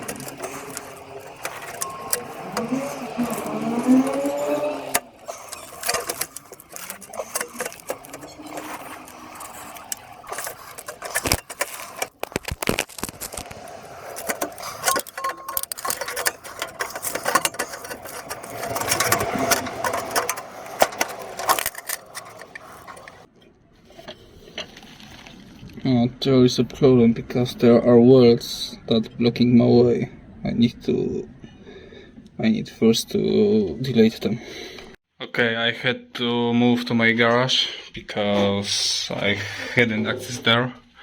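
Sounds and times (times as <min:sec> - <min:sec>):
metal parts and tools clicking: 0:00.0 - 0:23.3.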